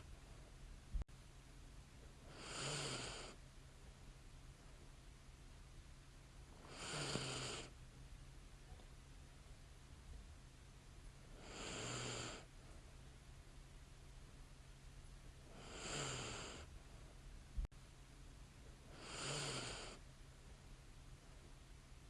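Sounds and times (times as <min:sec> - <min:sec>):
faint steady hum: 0:00.0 - 0:22.0
woman breathing with light snore: 0:02.2 - 0:03.4, 0:06.6 - 0:07.8, 0:11.3 - 0:12.5, 0:15.4 - 0:16.7, 0:18.9 - 0:20.0.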